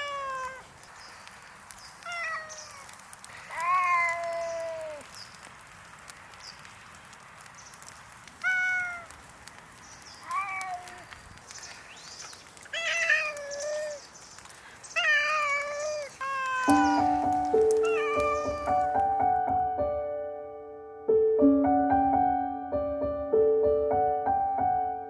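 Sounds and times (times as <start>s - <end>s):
cats meowing: 0.0s - 0.8s, 1.9s - 5.2s, 8.4s - 9.2s, 10.2s - 11.3s, 12.4s - 19.1s
piano music: 16.6s - 25.0s.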